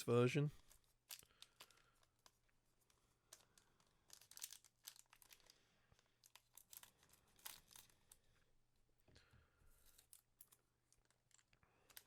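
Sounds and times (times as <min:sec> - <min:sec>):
foil wrapper crinkling: 0:01.0 - 0:08.0.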